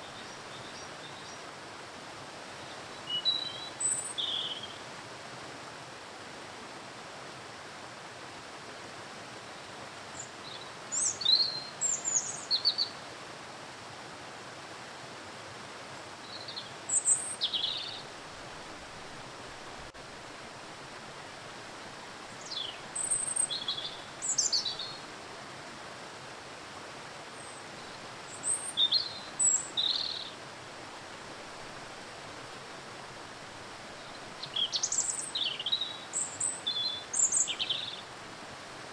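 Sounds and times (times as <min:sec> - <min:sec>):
small birds chirping: 0:16.3 - 0:18.0, 0:22.3 - 0:25.0, 0:27.4 - 0:30.4, 0:34.0 - 0:38.0.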